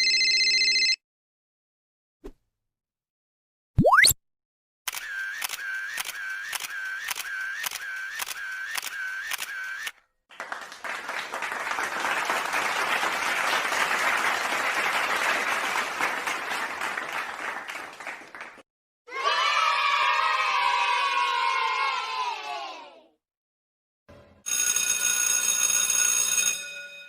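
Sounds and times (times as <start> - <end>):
camera shutter clicking: 4.9 - 9.9
crowd applauding and cheering: 10.3 - 18.6.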